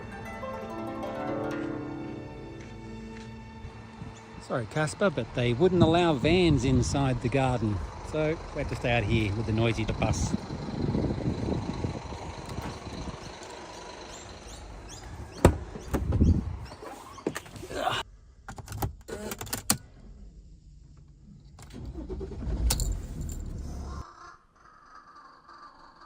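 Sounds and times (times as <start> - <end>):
vehicle engine running: 1.5 - 16.7, 19.9 - 24.0.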